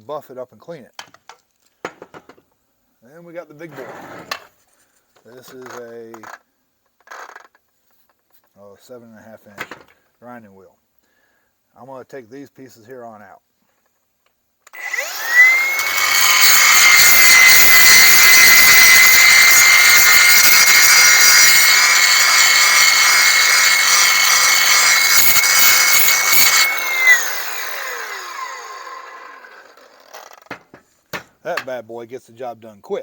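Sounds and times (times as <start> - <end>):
grinder winding down: 14.7 - 30.7
angle grinder grinding steel: 14.7 - 31.7.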